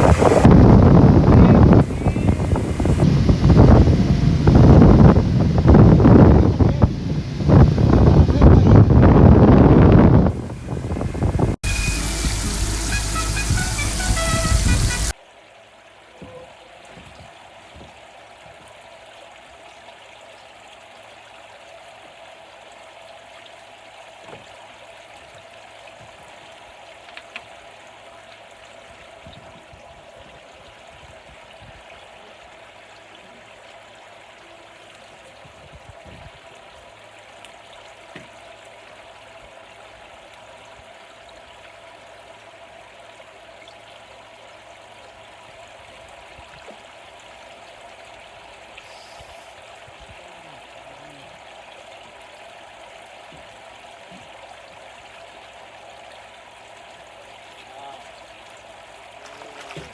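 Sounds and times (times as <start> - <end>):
faint even hum: 0.0 - 15.1
rushing water: 0.0 - 59.9.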